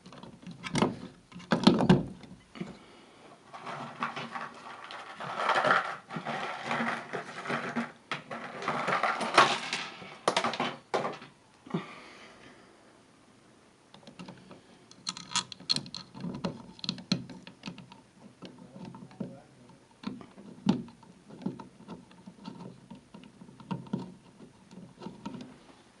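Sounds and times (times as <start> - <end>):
handling knocks and clicks: 0.0 - 2.8, 3.6 - 11.4, 13.9 - 25.6
rustling scrapes: 3.3 - 10.8.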